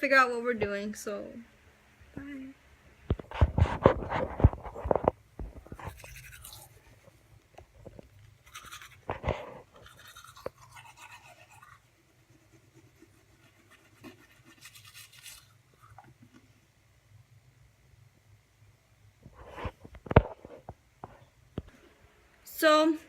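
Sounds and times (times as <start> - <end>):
toothbrush scrubbing teeth: 5.7 - 7.1, 8.4 - 16.2.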